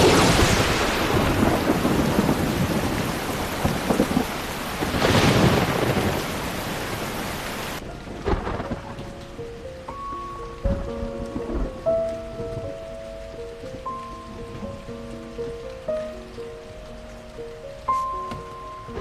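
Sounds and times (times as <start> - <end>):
rolling thunder: 0.0 - 9.5
heavy rain: 0.0 - 19.0.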